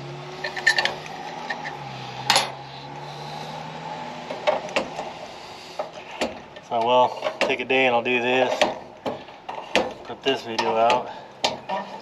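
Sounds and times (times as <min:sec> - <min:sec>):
metal tools clinking: 0:00.4 - 0:02.6.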